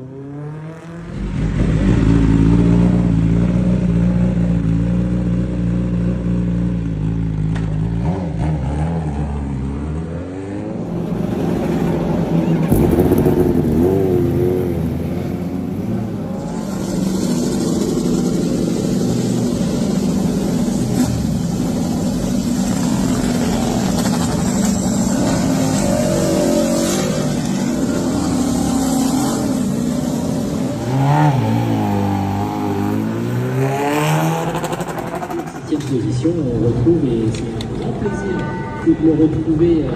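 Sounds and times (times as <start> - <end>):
motorbike revving: 0.0 - 38.0
motorbike engines droning: 0.0 - 39.9.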